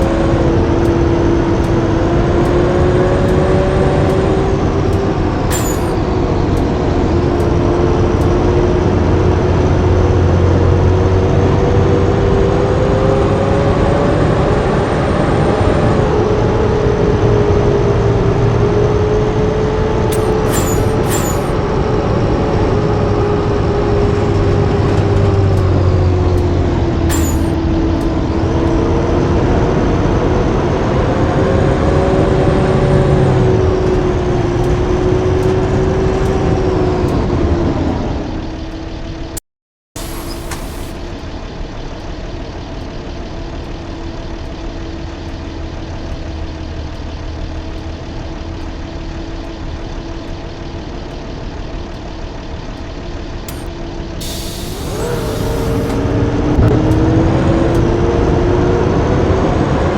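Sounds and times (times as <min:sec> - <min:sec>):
bus engine running: 0:00.0 - 0:59.9.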